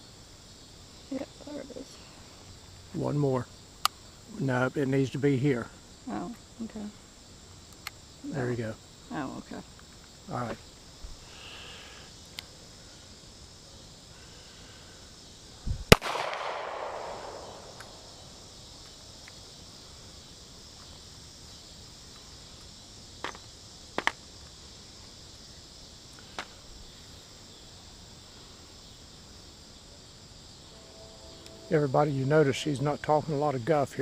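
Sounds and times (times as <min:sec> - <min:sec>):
crickets chirping: 0:00.0 - 0:34.0
handgun shot with echo: 0:15.9 - 0:18.0
faint sharp clicks: 0:17.8 - 0:18.0.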